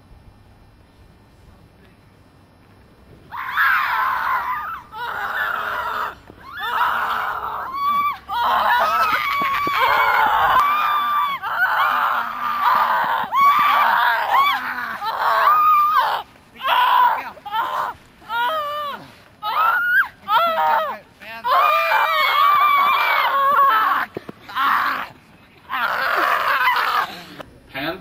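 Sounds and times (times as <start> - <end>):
people screaming: 3.3 - 27.4.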